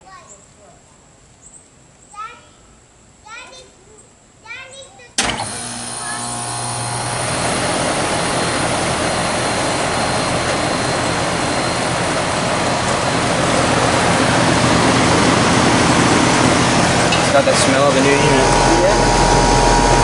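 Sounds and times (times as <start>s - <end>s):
compressor humming: 5.2s - 20.0s
condenser fan air noise: 5.2s - 20.0s.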